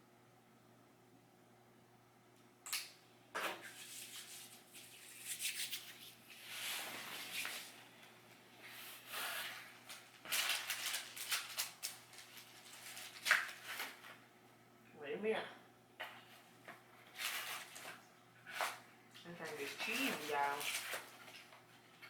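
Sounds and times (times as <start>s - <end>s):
rustling handling noises: 3.4s - 14.2s, 16.0s - 22.0s.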